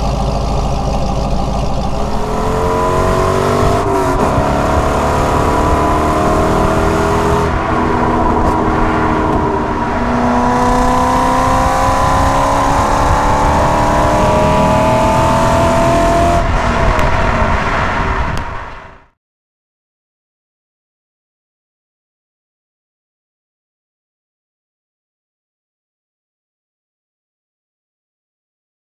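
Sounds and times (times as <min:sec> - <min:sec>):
car engine accelerating: 0:00.0 - 0:19.1.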